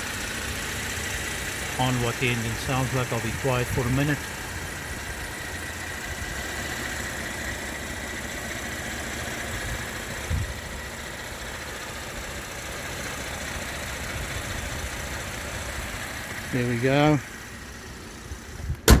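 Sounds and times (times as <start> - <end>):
car engine idling: 0.0 - 19.0
short thump: 18.7 - 19.0.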